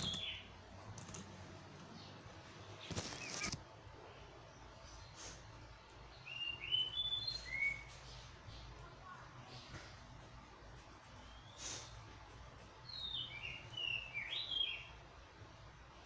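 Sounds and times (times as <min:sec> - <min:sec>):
small bird chirping: 0:00.0 - 0:01.2, 0:01.8 - 0:03.6, 0:04.6 - 0:10.1, 0:10.9 - 0:15.0
faint low hum: 0:00.0 - 0:16.0.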